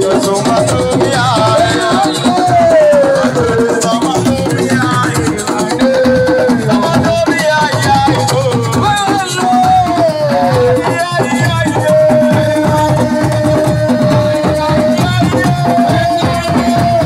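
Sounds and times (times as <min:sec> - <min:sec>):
drums and percussion: 0:00.0 - 0:17.0.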